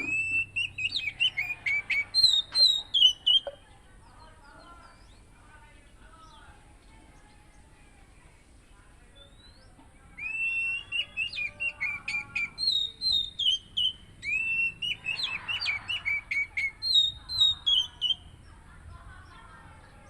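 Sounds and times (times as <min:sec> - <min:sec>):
bird singing whistled song: 0:00.0 - 0:03.6, 0:09.2 - 0:18.3.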